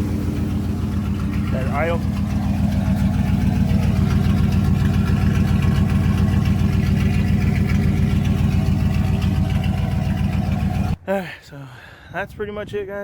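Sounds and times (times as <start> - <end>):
truck engine idling: 0.0 - 11.0.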